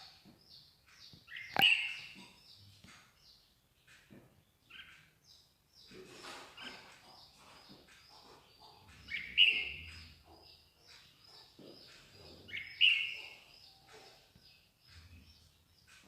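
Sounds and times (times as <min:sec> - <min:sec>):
songbirds chirping: 0:00.0 - 0:16.0
loud harsh bird calls: 0:01.1 - 0:02.6.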